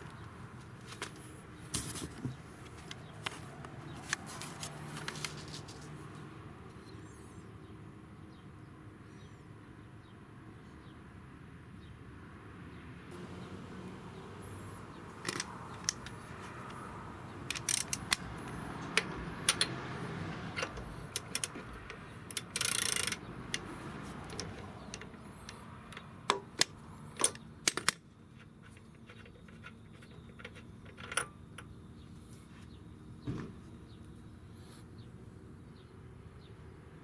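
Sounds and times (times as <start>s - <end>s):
metallic clicks of tools: 15.1s - 16.8s, 17.4s - 19.8s, 20.5s - 31.7s.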